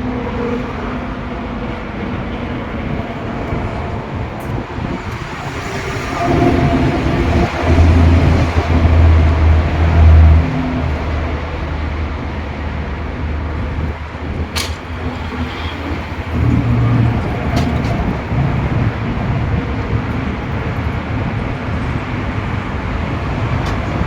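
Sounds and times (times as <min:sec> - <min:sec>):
steady rushing noise: 0:00.0 - 0:24.0
sharp click: 0:14.5 - 0:14.9.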